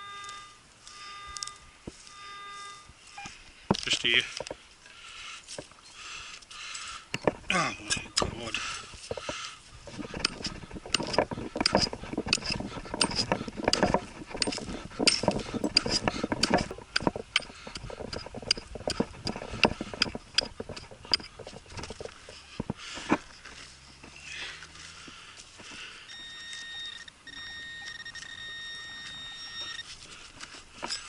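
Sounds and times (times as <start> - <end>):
soil and stones scraping: 0.8 - 27.0
pick striking hard ground: 7.2 - 23.4.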